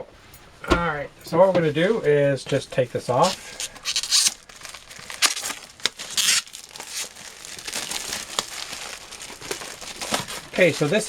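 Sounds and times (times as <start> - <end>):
plastic wrapping crinkling and tearing: 3.0 - 11.0.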